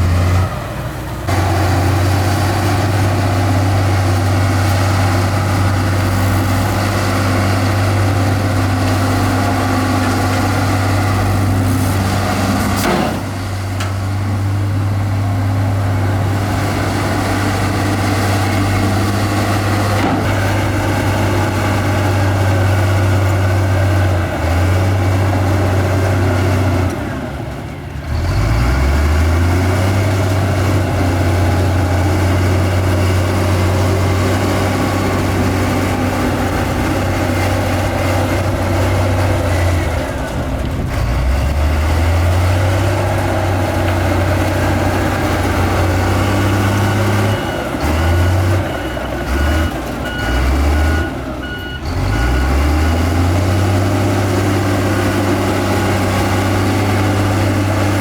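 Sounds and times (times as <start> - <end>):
heavy diesel machinery engine: 0.0 - 58.0
reversing beeper: 45.6 - 53.0.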